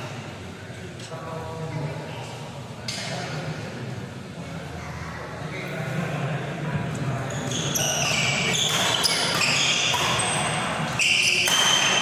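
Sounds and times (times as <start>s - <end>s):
shoes squeaking on court floor: 7.3s - 12.0s.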